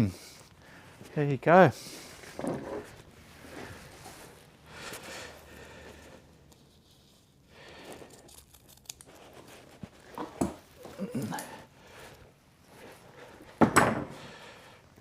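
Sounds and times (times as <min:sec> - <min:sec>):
fabric rustling and crumpling: 0:02.0 - 0:05.1
sharp knocks: 0:13.6 - 0:14.2.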